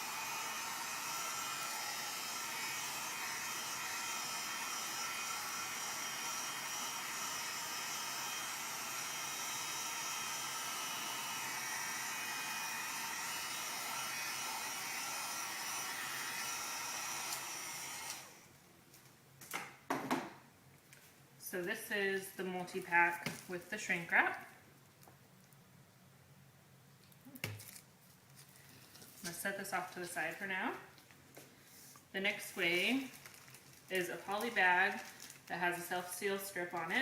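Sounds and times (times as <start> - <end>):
heat gun blowing: 0.0 - 18.5, 33.9 - 37.0.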